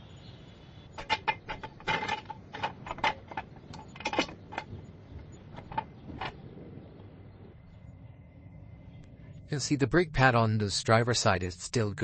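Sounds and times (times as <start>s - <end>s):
hard objects clicking and clacking: 1.0s - 6.4s.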